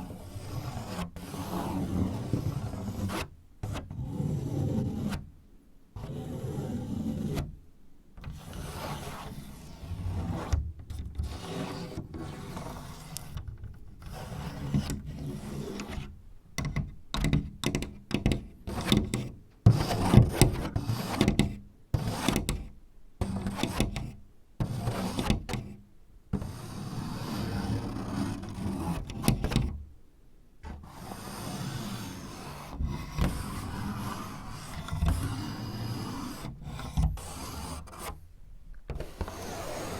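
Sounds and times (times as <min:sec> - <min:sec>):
fingertips scratching paper door: 0:08.3 - 0:25.8, 0:26.4 - 0:29.8, 0:30.6 - 0:38.2, 0:38.9 - 0:39.9.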